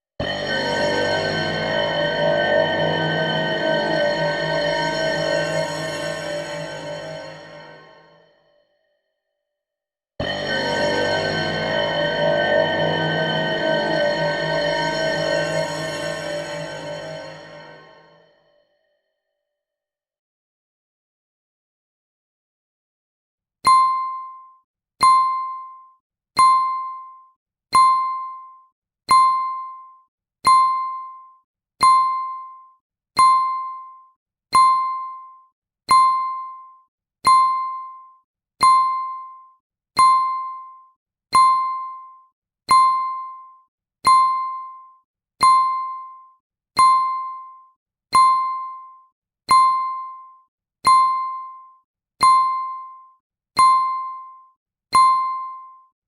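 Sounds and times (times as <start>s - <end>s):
bell ringing: 0.2s - 8.1s, 10.2s - 18.2s.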